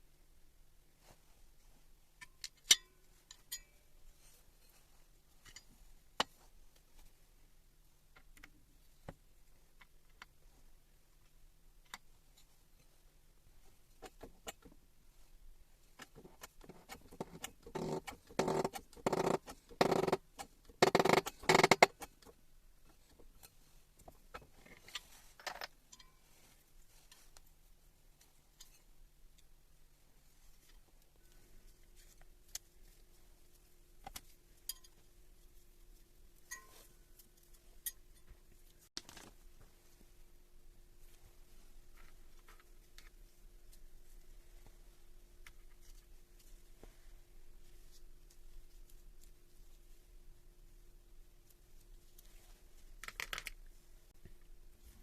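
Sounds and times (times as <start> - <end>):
clicks of metal parts and tools: 2.2 - 3.8, 14.0 - 14.8, 16.0 - 26.2, 34.0 - 35.1, 36.4 - 39.3.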